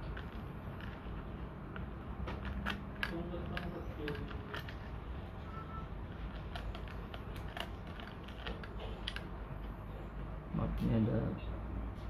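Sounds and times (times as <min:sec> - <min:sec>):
screwdriver clicks and creaks: 0:00.0 - 0:05.0.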